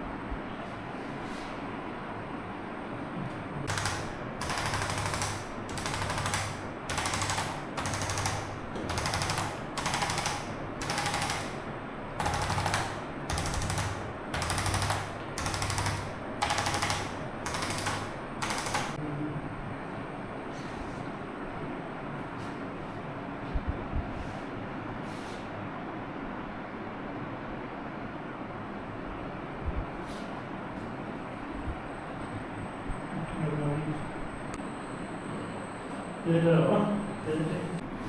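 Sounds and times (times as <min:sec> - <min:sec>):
fast mechanical rattling: 0:03.7 - 0:19.0.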